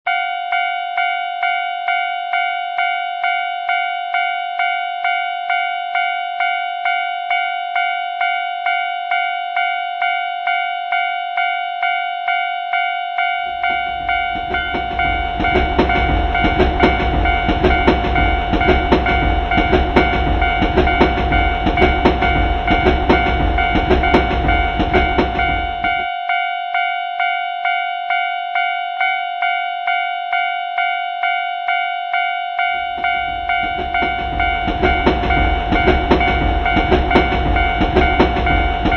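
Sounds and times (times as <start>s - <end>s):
crossing warning bell ringing: 0.1s - 38.9s
train rumble: 13.4s - 26.1s, 32.7s - 38.9s
train wheel clatter: 13.4s - 26.1s, 32.7s - 38.9s.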